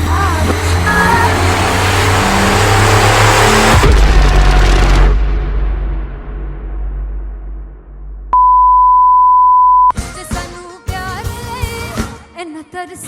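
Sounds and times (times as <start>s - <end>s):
high electronic beep: 8.4s - 9.9s.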